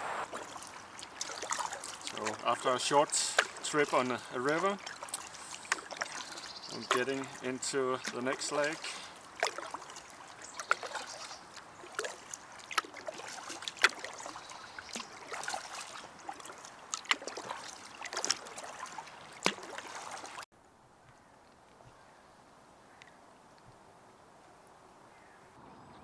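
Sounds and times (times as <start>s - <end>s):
paddle splashing water: 0.0s - 20.5s.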